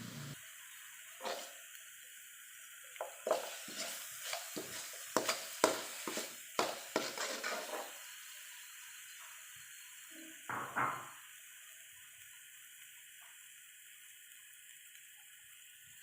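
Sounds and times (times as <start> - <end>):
utensil scraping a pan: 1.2 - 1.5, 3.2 - 8.0.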